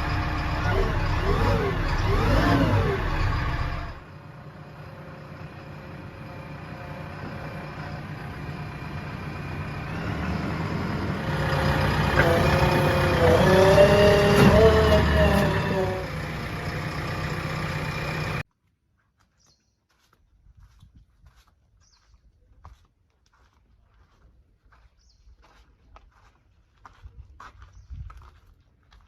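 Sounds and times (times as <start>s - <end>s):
diesel engine revving: 0.0s - 18.4s.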